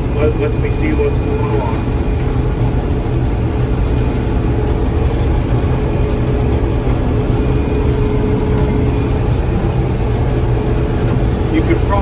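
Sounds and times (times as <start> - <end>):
combine engine drone: 0.0 - 12.0
machinery whine: 0.0 - 12.0.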